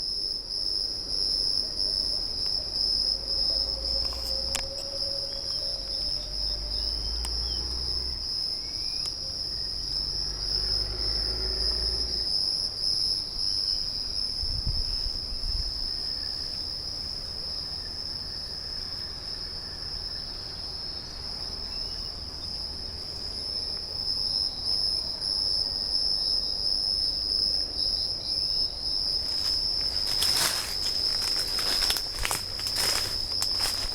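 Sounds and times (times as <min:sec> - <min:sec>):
insects buzzing chorus: 0:00.0 - 0:33.9.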